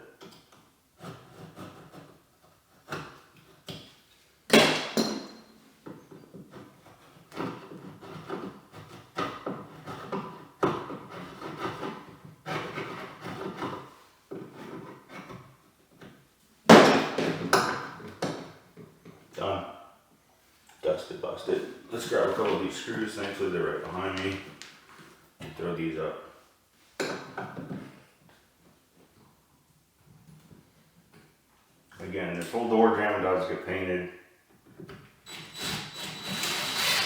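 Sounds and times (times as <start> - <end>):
scraping on wood: 0.3 - 3.9, 5.7 - 16.2.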